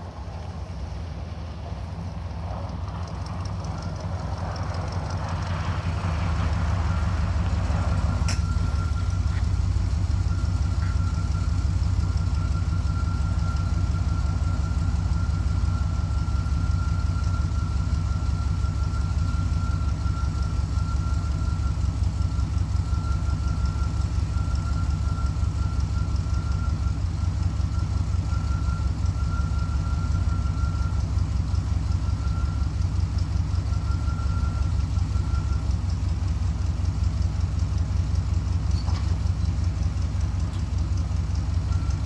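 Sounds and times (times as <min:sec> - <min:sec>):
engine idling: 0:00.0 - 0:42.0
click: 0:40.5 - 0:40.7.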